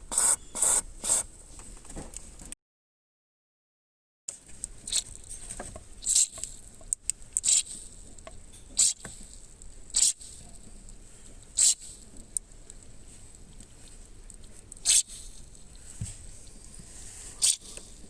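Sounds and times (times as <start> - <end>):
aerosol spray bursts: 0.1 - 1.3.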